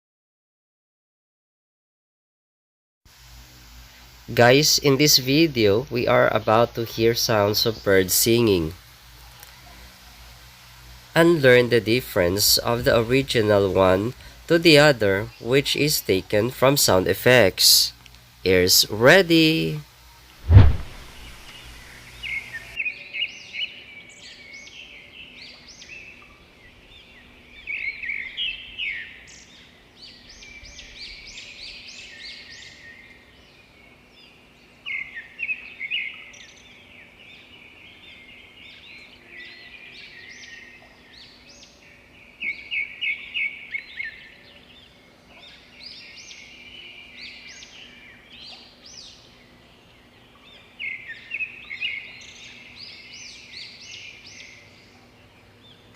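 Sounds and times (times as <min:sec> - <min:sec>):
soft bird chirps and trills: 0:03.4 - 0:55.9.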